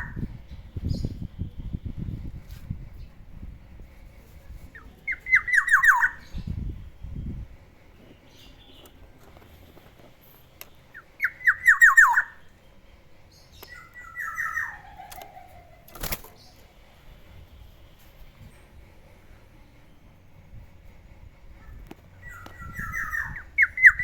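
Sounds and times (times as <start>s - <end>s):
bird calling: 11.0s - 12.4s.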